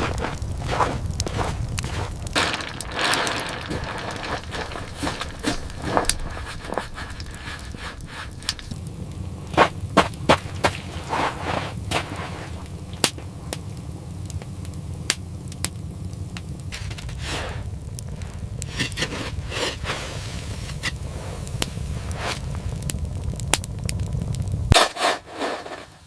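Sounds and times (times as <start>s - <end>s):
soft swishing crunches: 0.0s - 8.8s, 9.6s - 12.8s, 16.8s - 22.6s, 24.8s - 26.0s
low rumble: 0.0s - 24.8s
wood fire crackling: 0.0s - 26.0s.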